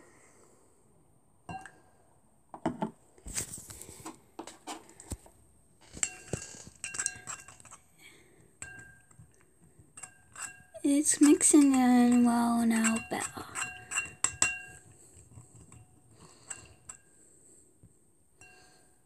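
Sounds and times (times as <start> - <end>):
spoon scraping against a bowl: 5.9 - 7.8, 10.0 - 17.2.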